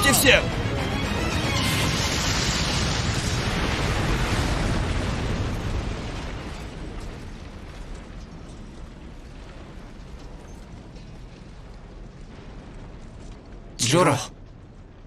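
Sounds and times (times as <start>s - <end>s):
explosion blast: 0.0s - 10.2s.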